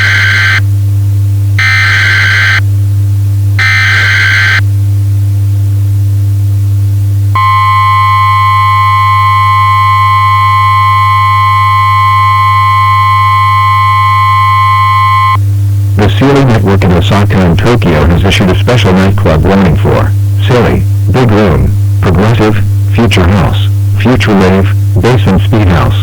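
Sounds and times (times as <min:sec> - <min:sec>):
loud low hum: 0:00.0 - 0:26.0
screeching digital header bursts: 0:01.6 - 0:02.6, 0:03.6 - 0:04.6
two-tone attention signal: 0:07.4 - 0:15.4.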